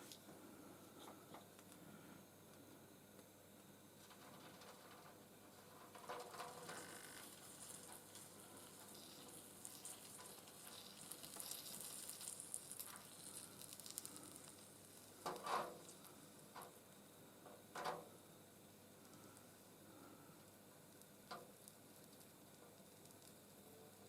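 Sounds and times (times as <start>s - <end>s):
solder flux sizzling: 0.0s - 24.0s.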